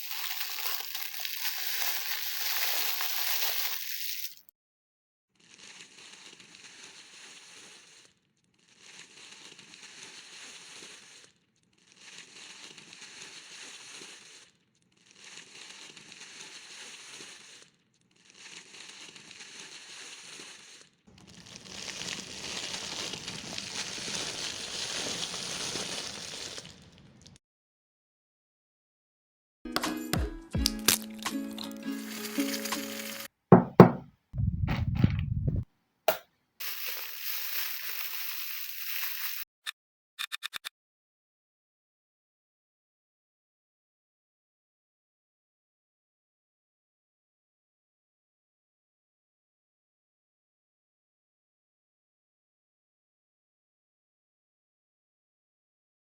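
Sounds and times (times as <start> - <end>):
crackling crushing noise: 0.0 - 4.5, 5.4 - 27.4, 30.7 - 33.3, 36.6 - 39.5.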